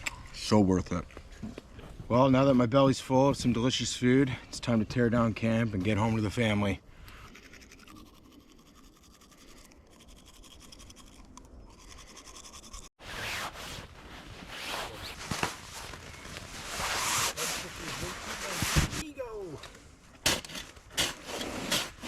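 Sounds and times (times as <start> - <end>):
camp gear scraping and rustling: 13.0 - 22.0.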